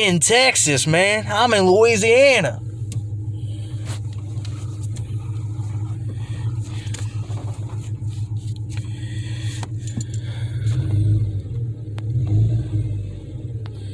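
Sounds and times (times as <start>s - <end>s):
pickup engine humming: 0.0s - 13.9s.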